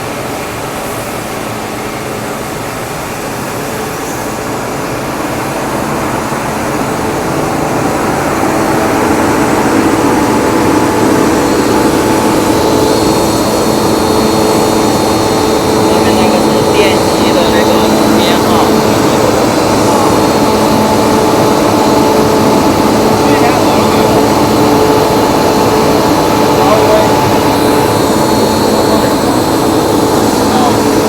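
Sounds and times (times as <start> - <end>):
air compressor humming: 0.0 - 31.0
high steady whine: 0.0 - 31.0.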